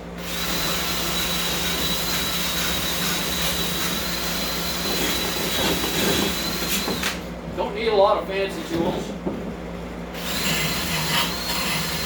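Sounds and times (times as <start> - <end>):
power tool whining: 0.2 - 7.2, 10.2 - 12.0.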